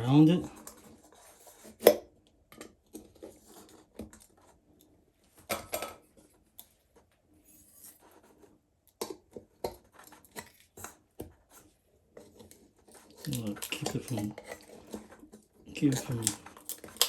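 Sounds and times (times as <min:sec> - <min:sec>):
putty knife scraping plastic cover: 0:12.2 - 0:17.0.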